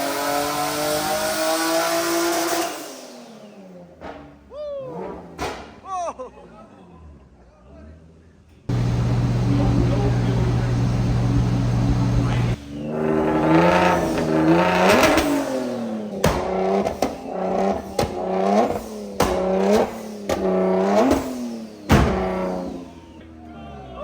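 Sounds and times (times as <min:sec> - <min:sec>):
car engine revving: 0:00.0 - 0:05.8, 0:08.7 - 0:23.4
exhaust pops: 0:08.7 - 0:12.6, 0:13.2 - 0:22.5.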